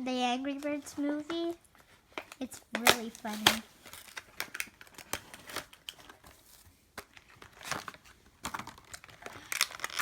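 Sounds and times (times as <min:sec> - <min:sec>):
plastic packaging crinkling and tearing: 0:02.7 - 0:10.0.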